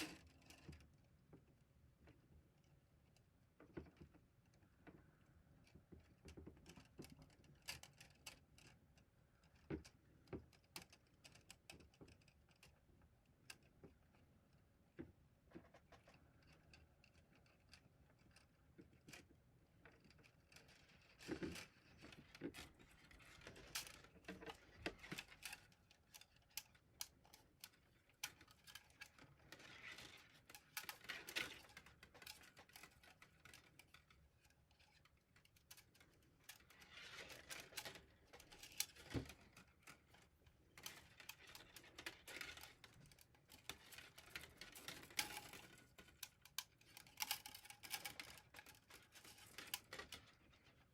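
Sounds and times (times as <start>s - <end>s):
plastic spool clicks and rustles: 14.9s - 50.9s.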